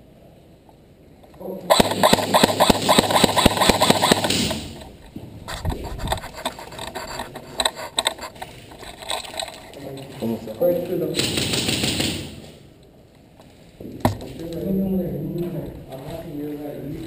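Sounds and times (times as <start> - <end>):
airsoft gun rapid burst: 1.7 - 4.9, 11.1 - 12.6.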